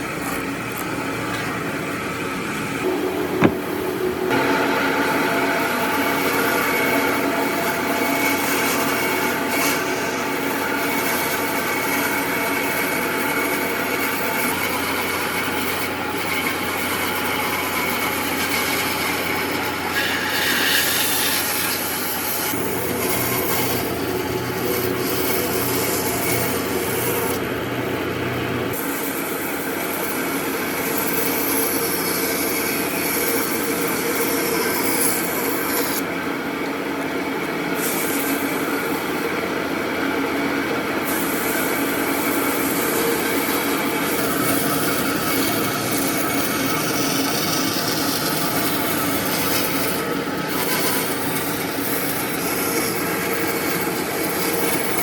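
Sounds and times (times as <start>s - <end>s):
tool sanding wood: 4.3s - 27.4s, 41.0s - 55.0s.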